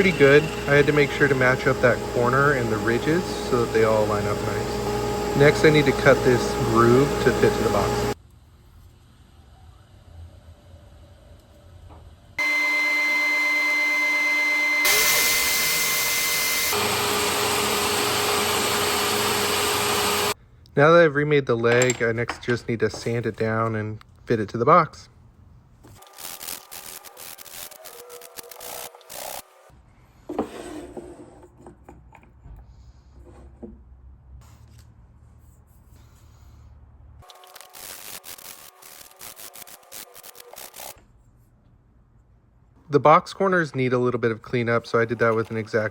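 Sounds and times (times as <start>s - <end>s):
power tool cutting wood: 0.0s - 8.2s, 12.4s - 20.4s, 26.0s - 29.6s, 37.3s - 41.0s
wooden pieces knocking: 21.6s - 23.1s.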